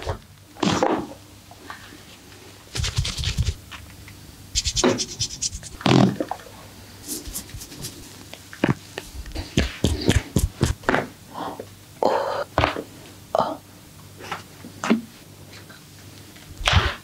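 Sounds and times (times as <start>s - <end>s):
hands scratching and tapping skin: 2.8s - 3.6s, 4.6s - 5.8s, 7.0s - 8.0s, 9.2s - 11.0s
thuds on skin: 9.5s - 11.0s.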